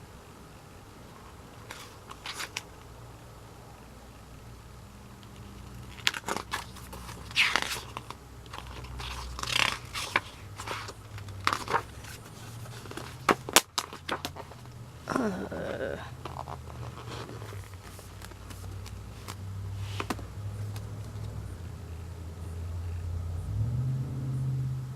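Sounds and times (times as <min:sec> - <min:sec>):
paper and plastic crinkling: 0:01.6 - 0:02.7, 0:05.3 - 0:14.8, 0:15.6 - 0:21.2.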